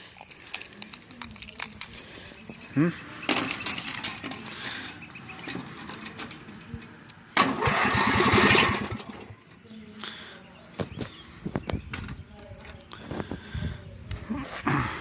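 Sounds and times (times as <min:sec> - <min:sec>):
lawn mower engine cranking: 0:00.0 - 0:09.4.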